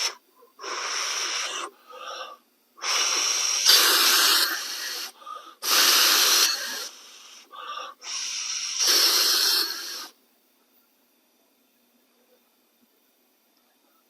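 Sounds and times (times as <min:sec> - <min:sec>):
air wheezing and hissing: 0:00.0 - 0:10.2.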